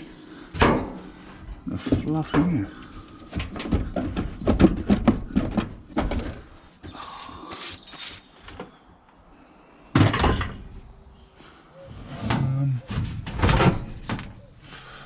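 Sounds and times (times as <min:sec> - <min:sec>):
clattering knocks and rattles: 0:00.6 - 0:06.6, 0:10.0 - 0:10.7, 0:12.2 - 0:14.4.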